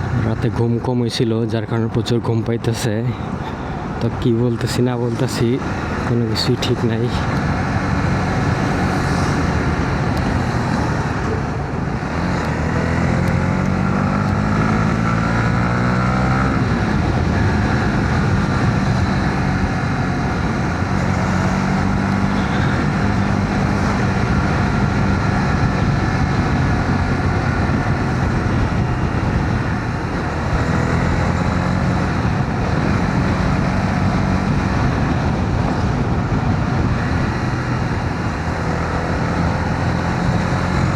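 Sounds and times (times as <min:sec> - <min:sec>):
wind and road noise: 0:00.0 - 0:40.9
motorcycle engine running: 0:05.6 - 0:40.9.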